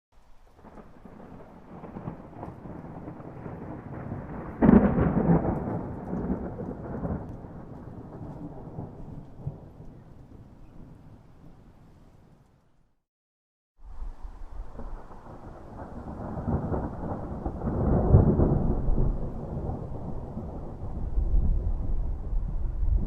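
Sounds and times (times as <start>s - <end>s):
steady rain: 0.2s - 12.3s, 13.8s - 23.0s
thunder rumbling: 0.3s - 12.3s, 13.9s - 23.0s
loud thunder clap: 0.6s - 9.9s, 14.7s - 23.0s.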